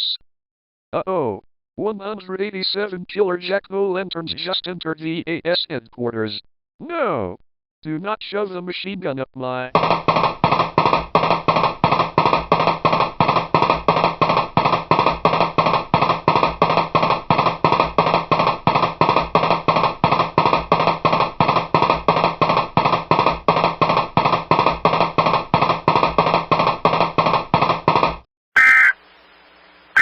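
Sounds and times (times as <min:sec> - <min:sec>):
music with fast steady beat: 0:09.8 - 0:28.2.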